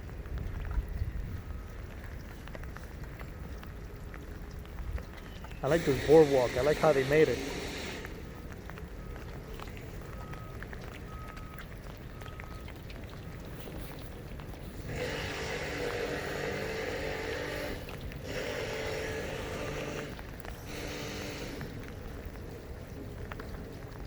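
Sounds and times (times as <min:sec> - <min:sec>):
hiss: 0:05.7 - 0:08.2
faint short beeps: 0:10.1 - 0:11.6.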